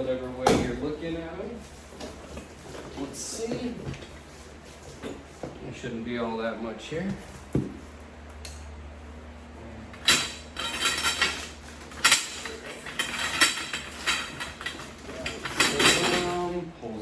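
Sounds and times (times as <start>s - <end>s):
metal poles clinking: 10.0s - 16.6s.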